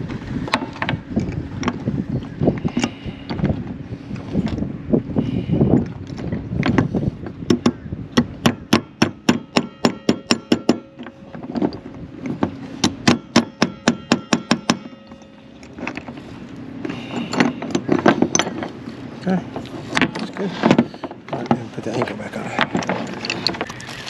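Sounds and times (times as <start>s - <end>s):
handling noise: 6.0s - 24.0s
hammer striking metal: 8.4s - 11.2s, 12.8s - 15.6s.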